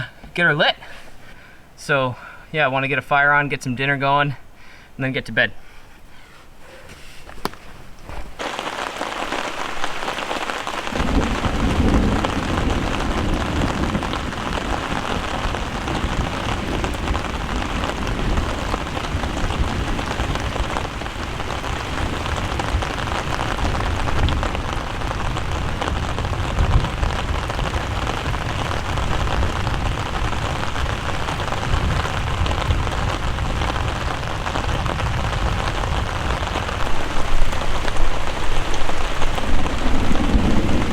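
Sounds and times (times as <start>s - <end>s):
heavy rain pouring: 8.3s - 40.9s
deep thunder rumbling: 8.4s - 40.9s.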